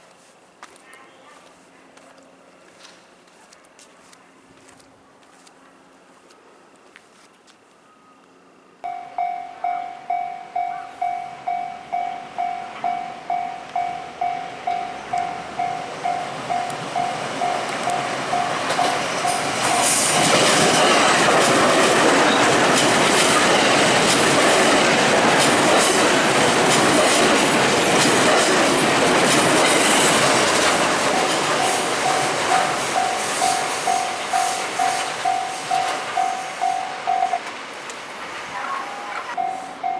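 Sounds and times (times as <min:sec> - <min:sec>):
level-crossing warning bell: 0:08.8 - 0:37.6, 0:38.3 - 0:39.9
train wheels clattering: 0:08.9 - 0:38.5.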